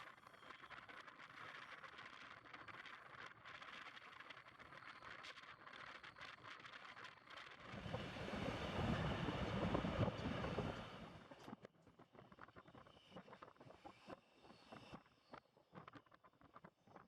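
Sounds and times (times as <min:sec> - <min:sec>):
rushing wind: 0:07.6 - 0:11.3
train running noise: 0:07.6 - 0:11.6.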